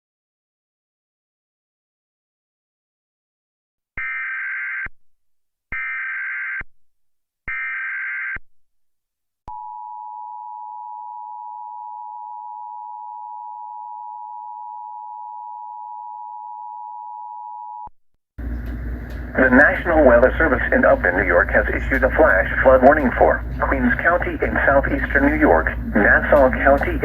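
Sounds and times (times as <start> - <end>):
long steady attention tone: 9.5 - 27.0.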